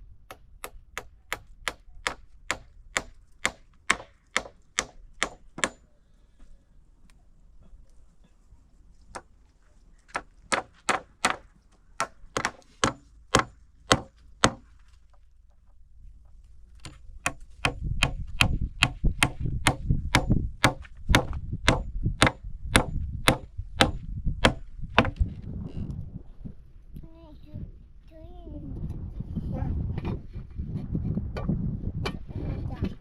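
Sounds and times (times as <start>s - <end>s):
sharp wooden knocks: 0.3s - 5.8s, 10.1s - 14.7s, 16.8s - 25.2s.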